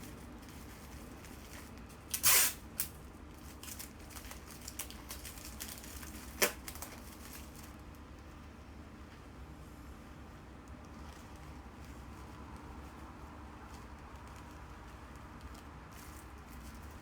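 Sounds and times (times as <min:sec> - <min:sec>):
small rustles and ticks: 0:00.0 - 0:02.1, 0:03.0 - 0:17.0.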